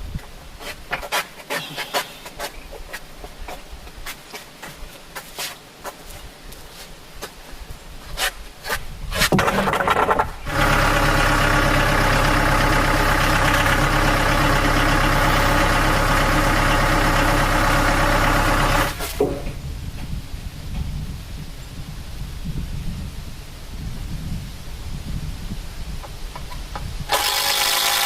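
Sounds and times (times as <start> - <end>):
engine starting clicks: 9.2 - 15.6, 27.1 - 28.0
engine running: 9.3 - 19.6, 27.1 - 28.0.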